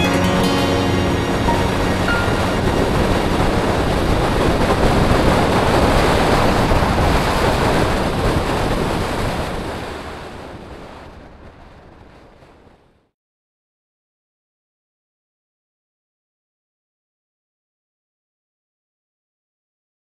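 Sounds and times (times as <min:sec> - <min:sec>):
sea surf: 0:00.0 - 0:11.3
wind: 0:00.0 - 0:13.1.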